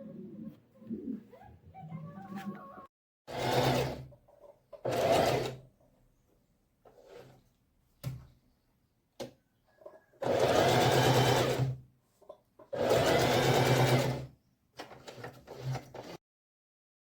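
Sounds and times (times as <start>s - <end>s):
sewing machine stitching: 3.3s - 4.2s, 4.8s - 5.6s, 10.2s - 11.8s, 12.7s - 16.2s.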